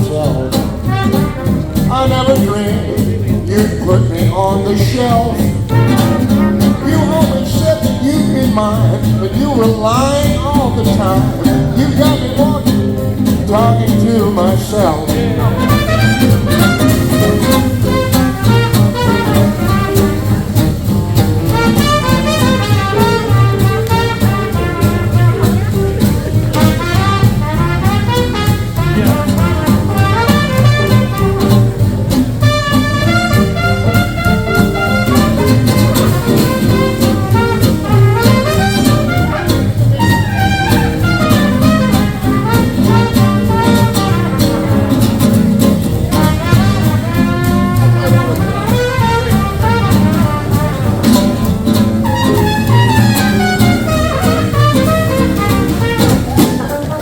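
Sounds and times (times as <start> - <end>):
swing jazz band playing: 0.0 - 57.0
brass horn solo: 0.8 - 1.8, 5.7 - 7.2, 15.4 - 20.6, 21.4 - 44.9, 46.0 - 51.4, 52.0 - 57.0.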